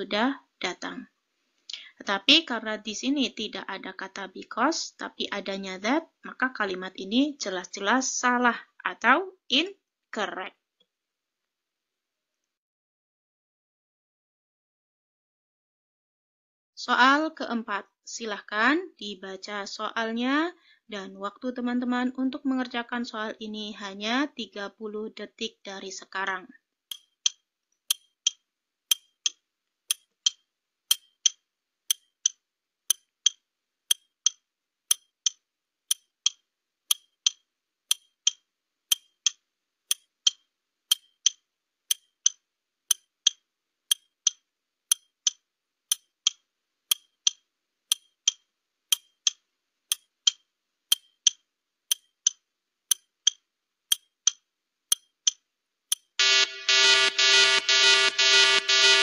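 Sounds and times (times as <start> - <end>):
clock ticking: 26.9 - 59.0.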